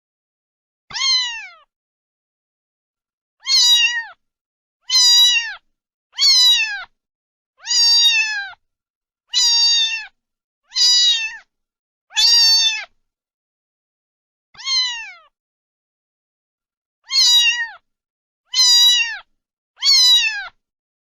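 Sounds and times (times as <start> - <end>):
cat meowing: 0.9 - 1.7, 3.4 - 4.2, 4.8 - 7.0, 7.6 - 8.6, 9.3 - 11.5, 12.1 - 13.0, 14.6 - 15.4, 17.0 - 17.8, 18.5 - 20.6.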